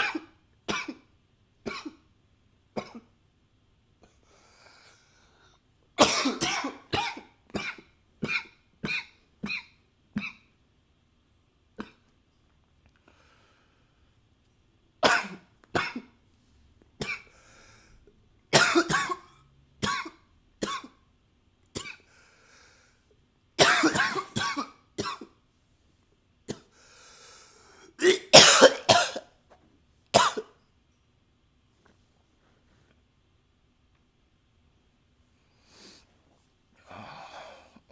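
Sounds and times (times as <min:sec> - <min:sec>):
man coughing: 0:06.0 - 0:09.6, 0:23.6 - 0:25.2, 0:28.0 - 0:29.3, 0:30.2 - 0:30.5.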